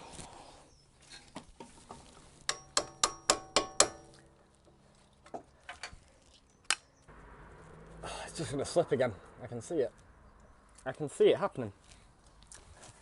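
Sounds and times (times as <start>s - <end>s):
tool clinking on metal nut: 2.5s - 4.2s.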